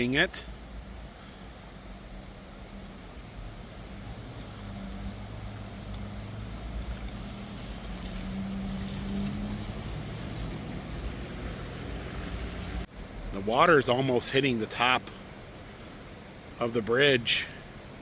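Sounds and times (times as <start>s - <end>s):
vehicle engine humming: 0.0s - 13.7s.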